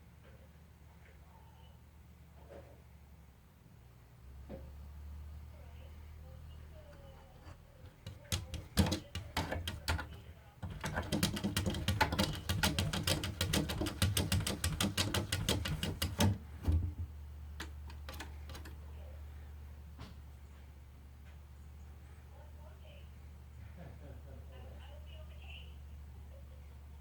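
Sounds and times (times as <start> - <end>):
plastic cat flap clattering: 7.4 - 18.8.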